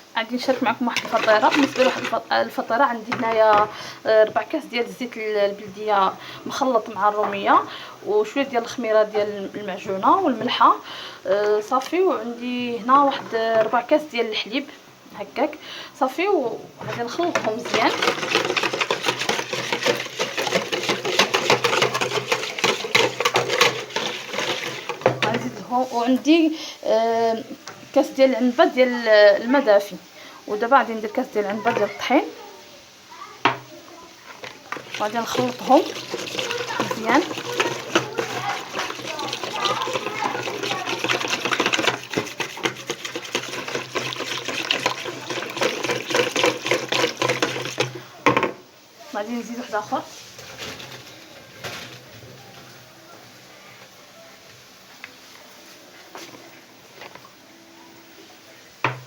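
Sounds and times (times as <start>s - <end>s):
batter sloshing in a bowl: 0.4s - 10.7s, 16.8s - 26.3s, 34.3s - 48.2s.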